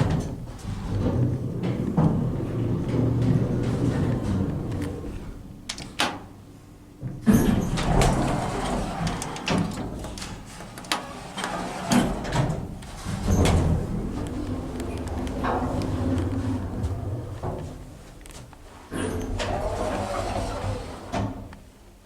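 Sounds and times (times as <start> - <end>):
lift motor hum: 0.0 - 5.6, 11.1 - 21.6
lift doors and relays clunking: 0.0 - 21.7.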